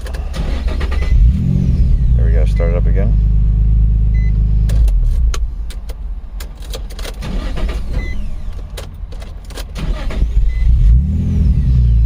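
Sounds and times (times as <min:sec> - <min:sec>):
engine cranking with rumbling: 0:00.0 - 0:05.4, 0:06.4 - 0:12.0
car engine running: 0:00.0 - 0:12.0.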